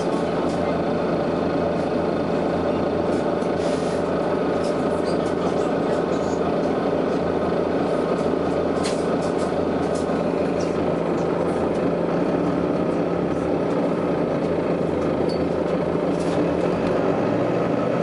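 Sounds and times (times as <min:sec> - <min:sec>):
diesel bus engine running: 0:00.0 - 0:18.0.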